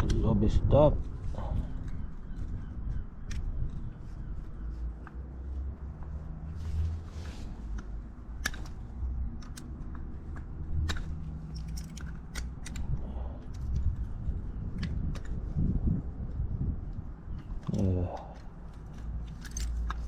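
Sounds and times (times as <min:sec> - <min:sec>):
metallic clicks of hand tools: 0:09.4 - 0:13.8, 0:17.6 - 0:20.0.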